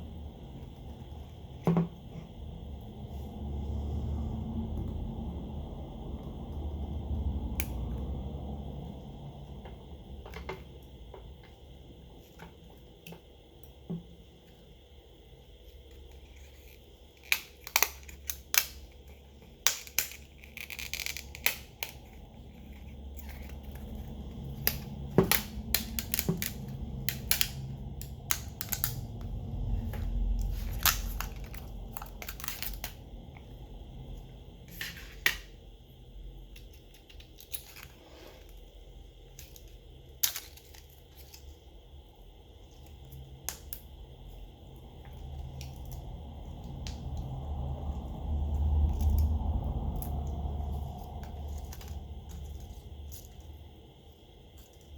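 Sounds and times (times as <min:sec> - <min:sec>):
low rumble: 0:00.0 - 0:10.2, 0:22.0 - 0:34.7, 0:44.0 - 0:54.6.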